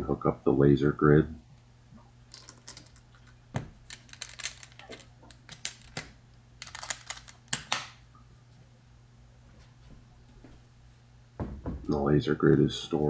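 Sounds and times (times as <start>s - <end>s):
clicks of hard case handled: 3.9s - 8.0s.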